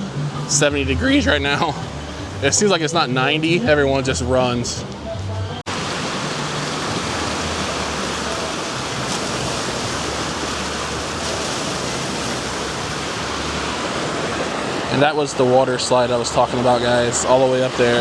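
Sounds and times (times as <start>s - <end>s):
running water rushing: 5.7s - 18.0s.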